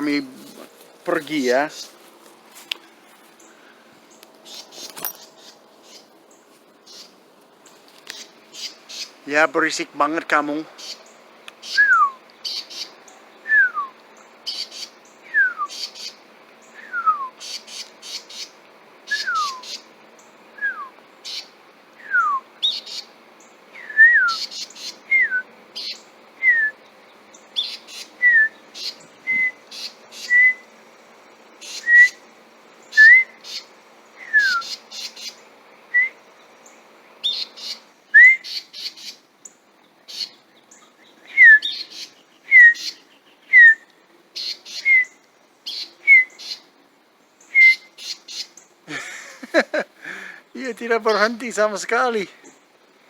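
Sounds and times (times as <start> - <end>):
bird whistling calls: 11.6 - 18.5, 19.1 - 19.9, 20.6 - 23.1, 23.8 - 26.8, 27.6 - 30.7, 31.6 - 32.2, 32.9 - 36.2, 37.2 - 39.2, 41.0 - 46.7, 47.4 - 48.6.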